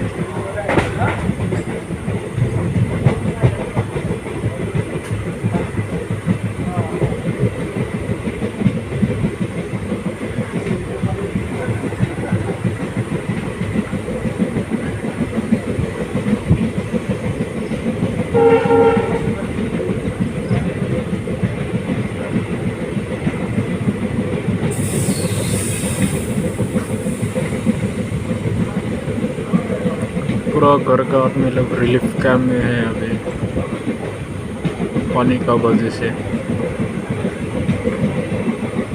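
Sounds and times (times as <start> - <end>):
train rumble: 0.0 - 38.9
wheels clickety-clack: 0.0 - 38.9
train horn blast: 18.3 - 19.4.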